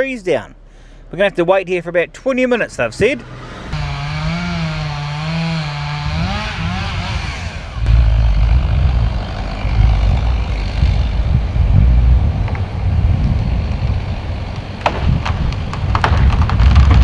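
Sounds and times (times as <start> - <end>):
chainsaw running: 3.7 - 15.4
heavy low rumble: 3.7 - 17.0.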